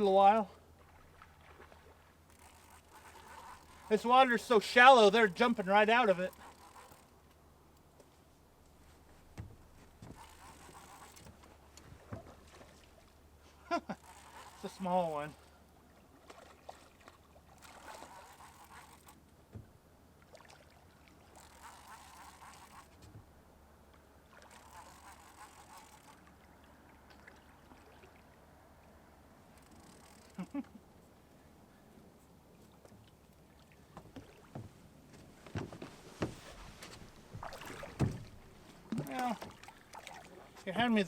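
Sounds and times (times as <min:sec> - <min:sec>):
knocks and thumps against small boat: 0:08.9 - 0:12.7, 0:19.4 - 0:19.8, 0:23.0 - 0:23.3, 0:33.9 - 0:39.9.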